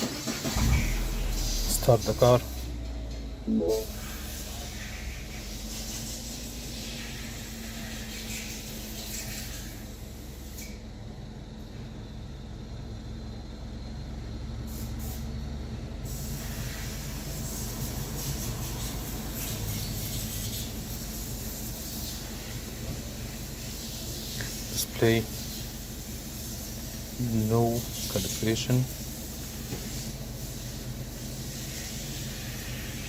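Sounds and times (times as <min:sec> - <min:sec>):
car engine idling: 0:00.0 - 0:06.2
steady hiss: 0:00.5 - 0:02.8, 0:16.0 - 0:33.0.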